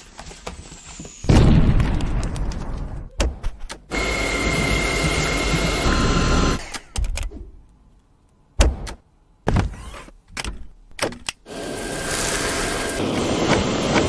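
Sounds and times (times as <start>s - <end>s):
vacuum motor whine: 3.9s - 6.6s, 11.5s - 14.0s.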